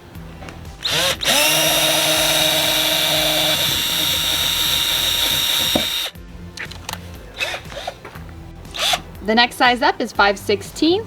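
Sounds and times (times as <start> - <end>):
cordless drill boring into plastic: 0.8 - 6.1, 8.8 - 9.0.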